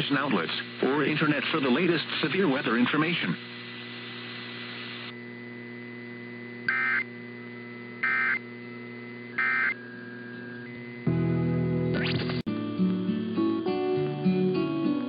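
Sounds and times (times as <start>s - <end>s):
steady electrical hum: 0.0s - 12.4s
data-tone bursts: 6.7s - 7.0s, 8.0s - 8.4s, 9.4s - 11.0s.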